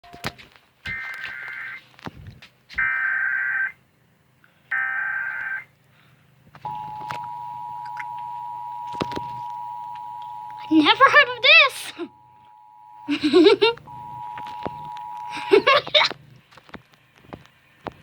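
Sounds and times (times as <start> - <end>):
two-tone attention signal: 6.7 - 11.5, 12.1 - 13.2, 13.9 - 15.8.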